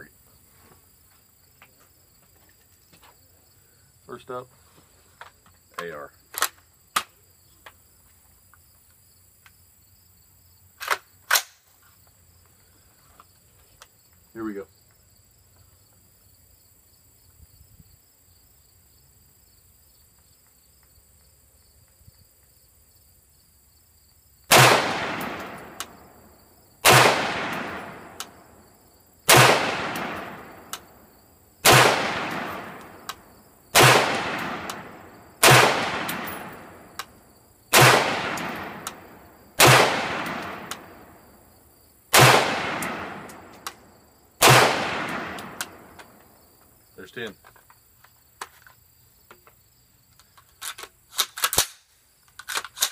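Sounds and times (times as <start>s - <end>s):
crickets chirping: 0.0s - 52.9s
rifle shots echoing: 24.5s - 26.2s, 26.8s - 28.5s, 29.3s - 31.0s, 31.6s - 37.1s, 37.7s - 41.2s, 42.1s - 43.8s, 44.4s - 46.0s.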